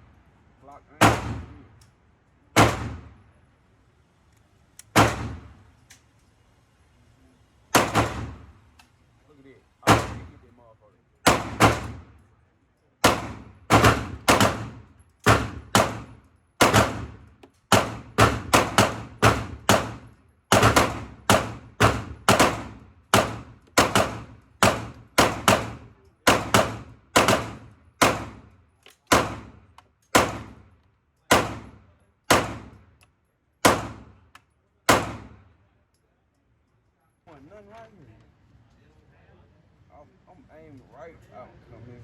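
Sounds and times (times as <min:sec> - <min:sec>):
pistol shots echoing indoors: 0:13.0 - 0:32.9.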